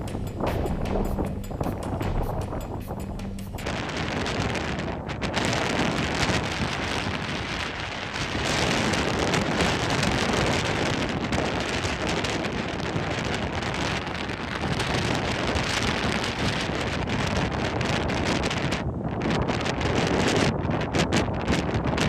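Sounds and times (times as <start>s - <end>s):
strong wind on microphone: 0.0s - 22.0s
heavy rain: 3.6s - 18.7s.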